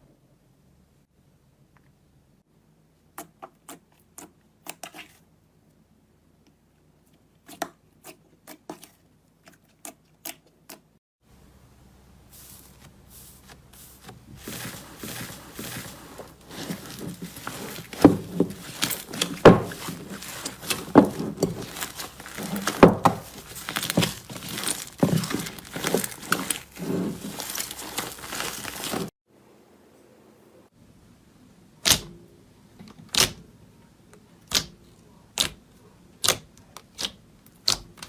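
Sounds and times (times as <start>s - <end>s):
slime crinkling and popping: 16.5s - 29.1s.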